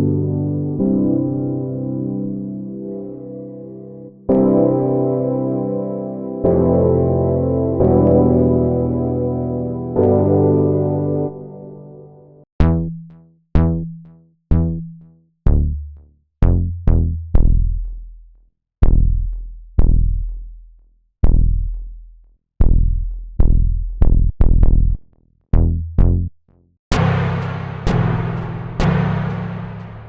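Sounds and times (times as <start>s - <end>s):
percussive drum machine hits: 26.9s - 30.0s.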